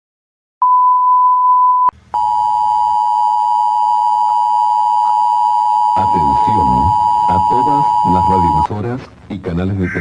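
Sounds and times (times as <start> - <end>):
two-tone emergency alert signal: 2.2 - 8.7.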